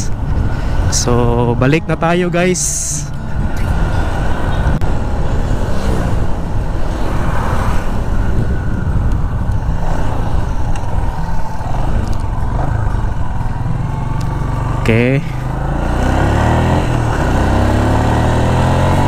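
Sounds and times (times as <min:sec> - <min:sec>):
wind noise on microphone: 0:00.0 - 0:14.4.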